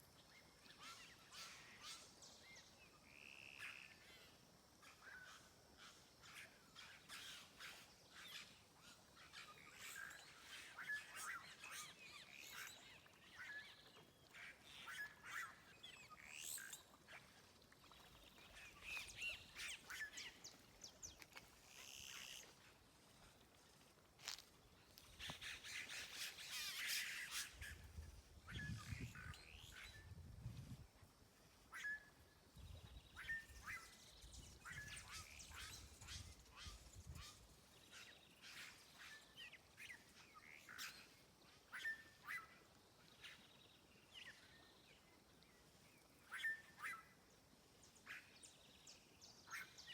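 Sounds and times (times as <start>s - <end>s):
faint bird calls: 31.7s - 44.7s, 46.2s - 47.3s.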